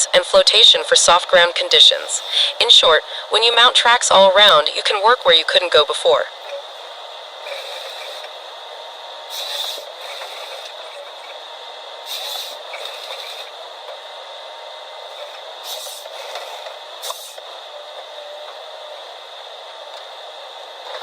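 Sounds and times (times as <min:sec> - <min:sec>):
short hissing bursts: 0:09.3 - 0:10.7, 0:12.0 - 0:13.5, 0:15.2 - 0:17.4.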